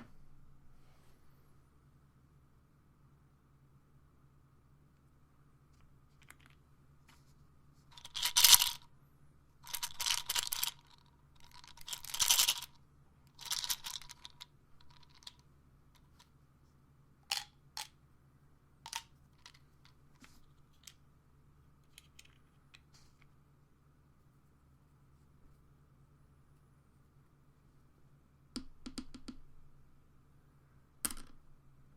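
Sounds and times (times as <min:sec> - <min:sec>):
pills rattling in plastic bottle: 0:07.9 - 0:08.8, 0:09.6 - 0:15.4.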